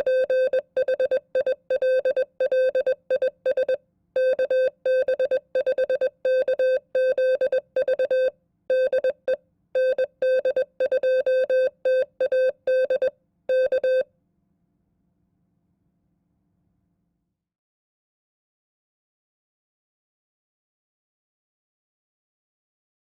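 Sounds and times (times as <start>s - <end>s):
morse code tone: 0.0s - 14.0s.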